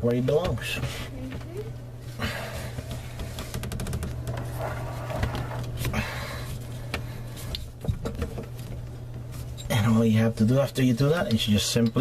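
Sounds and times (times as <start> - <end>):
knocks and rustling: 2.6 - 9.6.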